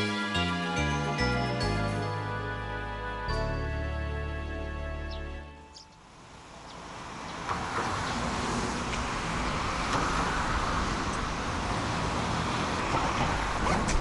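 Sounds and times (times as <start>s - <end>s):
car rushing on road: 6.4s - 14.0s.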